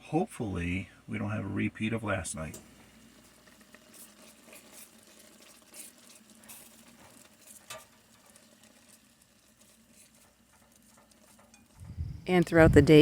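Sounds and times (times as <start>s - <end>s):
utensil clicking and scraping in pan: 2.5s - 12.6s
low steady hum: 11.7s - 13.0s.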